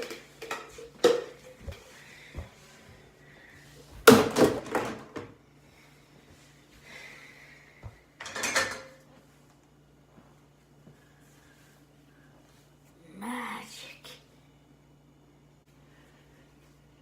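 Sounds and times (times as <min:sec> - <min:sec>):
dishes clattering in rack: 0:08.2 - 0:09.0.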